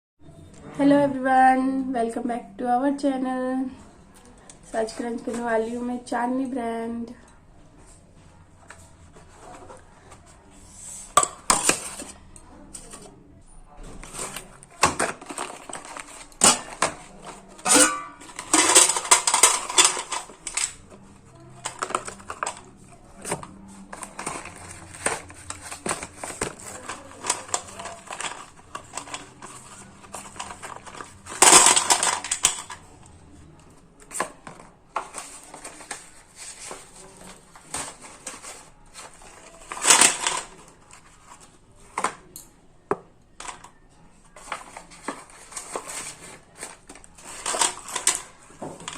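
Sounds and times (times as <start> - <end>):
slate pencils snapping and crunching: 14.2 - 20.9, 21.6 - 32.8, 37.6 - 41.1.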